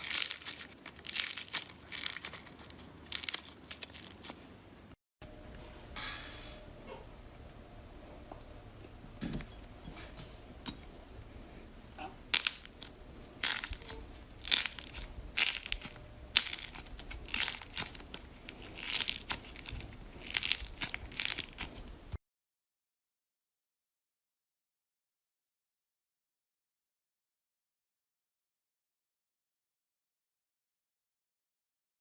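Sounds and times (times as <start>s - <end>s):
slime crackling when squeezed: 0.0s - 4.4s, 12.3s - 22.0s.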